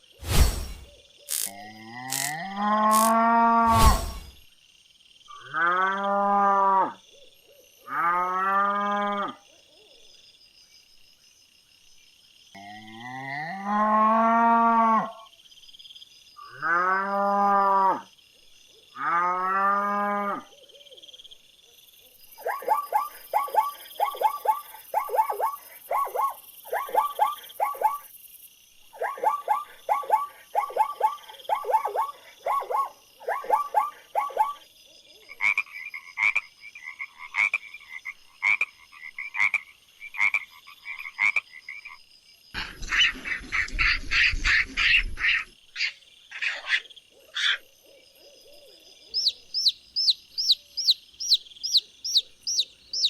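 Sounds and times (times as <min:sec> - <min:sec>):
frog croaking: 0:01.3 - 0:04.1, 0:35.3 - 0:42.0, 0:49.1 - 0:53.0.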